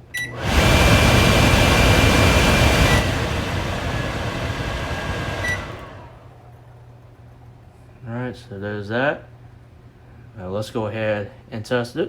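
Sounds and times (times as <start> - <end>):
microwave vent fan rushing: 0.0 - 7.6.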